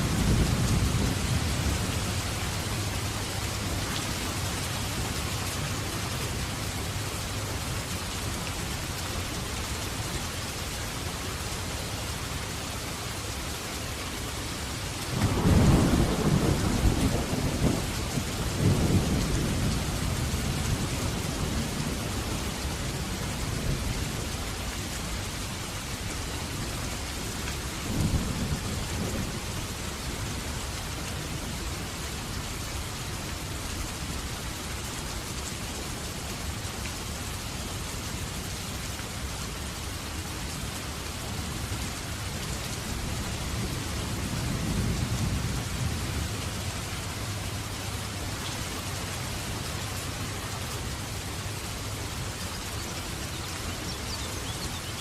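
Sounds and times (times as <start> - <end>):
heavy rain hissing: 0.0 - 55.0
thunder rumbling: 15.1 - 22.0.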